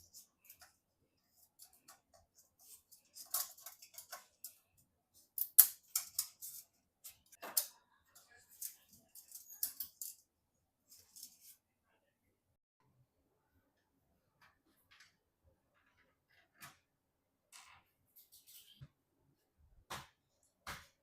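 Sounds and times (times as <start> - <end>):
hands handling computer parts: 0.0 - 10.2.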